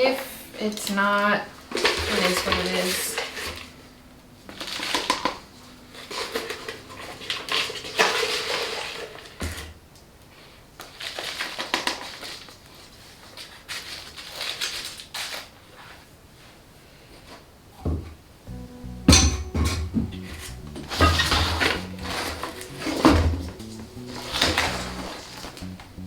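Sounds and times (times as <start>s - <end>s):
soil scraping and crunching: 20.2s - 26.0s.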